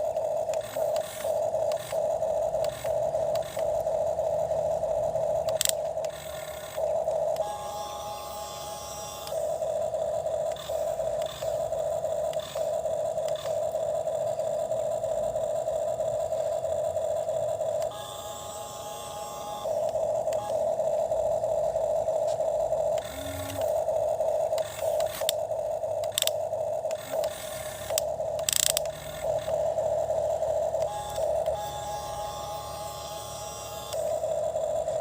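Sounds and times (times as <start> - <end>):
small electric motor whining: 0.0 - 35.0.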